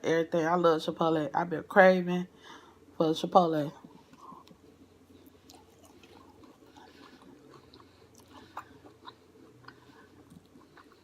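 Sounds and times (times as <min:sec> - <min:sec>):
person chewing food: 0:03.8 - 0:11.0.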